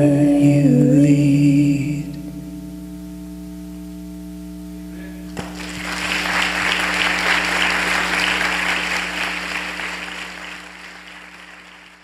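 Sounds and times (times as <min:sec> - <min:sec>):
low electrical hum: 0:00.0 - 0:12.0
audience applauding: 0:05.4 - 0:12.0.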